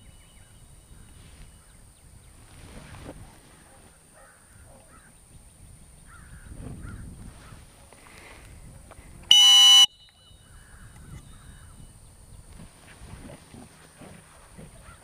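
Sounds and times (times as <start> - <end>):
dog whistle blast: 9.3 - 10.1.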